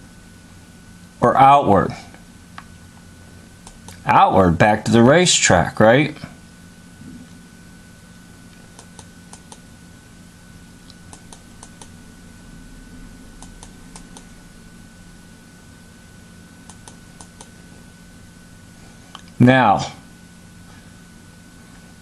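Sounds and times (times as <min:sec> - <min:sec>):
faint electrical hum: 0:00.0 - 0:22.0
light computer clicks: 0:08.6 - 0:09.6, 0:10.9 - 0:12.0, 0:13.4 - 0:14.3, 0:16.7 - 0:17.5.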